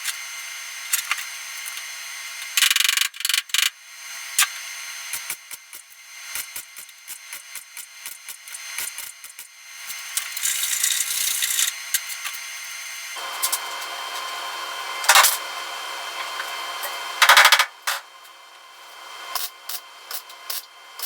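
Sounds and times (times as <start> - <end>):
metalworking power tool running: 3.5 - 21.0
loud harsh tool bursts: 15.0 - 15.5, 17.1 - 18.1.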